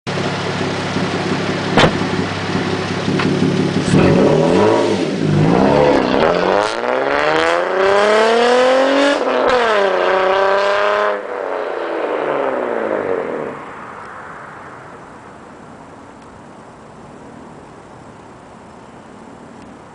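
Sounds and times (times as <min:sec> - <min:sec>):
car exhaust fly-by: 0:00.6 - 0:10.7.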